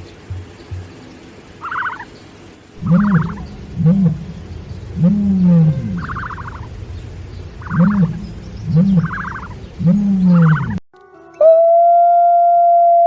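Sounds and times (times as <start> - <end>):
low animal calls: 1.6 - 2.1, 2.8 - 10.8
rapidly pulsing higher calls: 1.6 - 2.1, 2.8 - 10.8.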